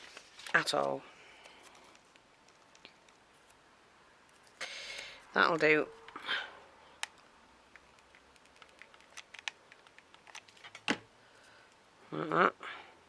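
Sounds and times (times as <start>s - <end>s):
craft pieces clicking and tapping: 7.8s - 10.5s.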